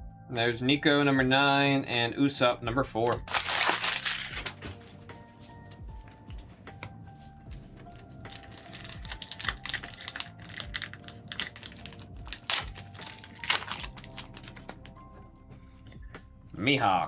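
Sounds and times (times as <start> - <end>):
foil packs crinkling and tearing: 3.1 - 5.0, 7.9 - 14.9
cards being handled: 3.1 - 6.9, 7.7 - 14.9.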